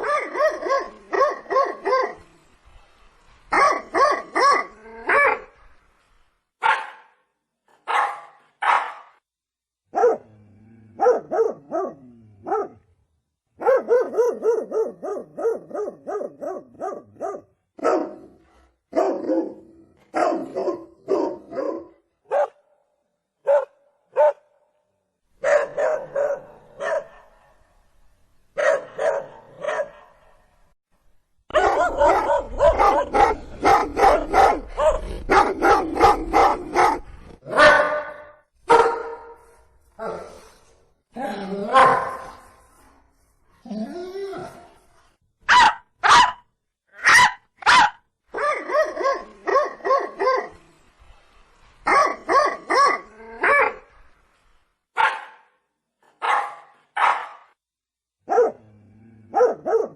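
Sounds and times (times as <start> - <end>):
dog barking: 0.0 - 2.2, 3.5 - 5.5, 6.6 - 7.2, 7.8 - 9.2, 9.9 - 10.3, 11.0 - 12.8, 13.6 - 18.3, 18.9 - 22.7, 23.4 - 24.6, 25.4 - 27.6, 28.6 - 30.4, 31.5 - 39.4, 41.7 - 42.4, 45.5 - 46.4, 47.0 - 50.6, 51.9 - 53.8, 55.0 - 55.6, 56.2 - 57.6, 58.2 - 58.7, 59.3 - 59.9.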